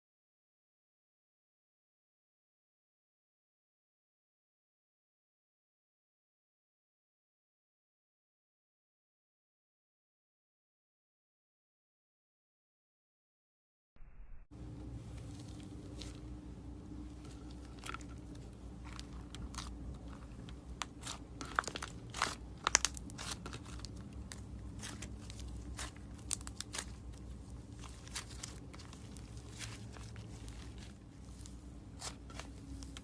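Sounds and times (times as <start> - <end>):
slime crackling and popping: 17.6 - 30.9.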